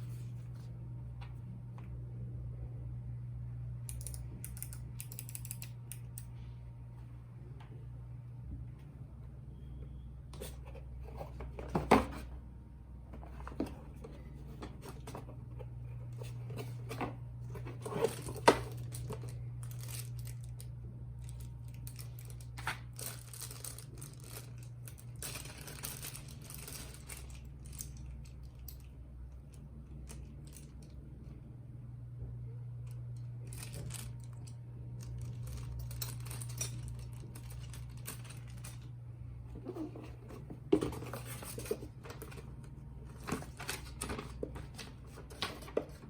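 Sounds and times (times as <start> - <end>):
steady low hum: 0.0 - 46.0
cardboard and plastic rustling: 10.4 - 12.4, 13.1 - 20.6, 21.4 - 28.0, 35.1 - 46.0.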